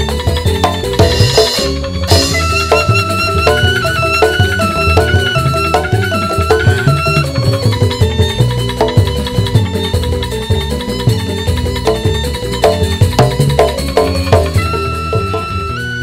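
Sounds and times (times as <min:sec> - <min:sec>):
bamboo ensemble playing: 0:00.0 - 0:16.0
drums: 0:00.0 - 0:16.0.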